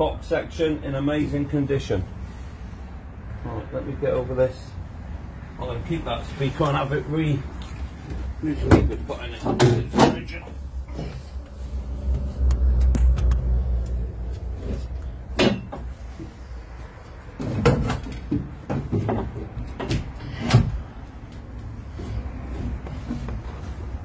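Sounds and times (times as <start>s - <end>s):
knocks and clunks in truck body: 8.0s - 10.6s, 14.6s - 16.4s, 17.3s - 21.0s
low rumble: 10.6s - 15.4s.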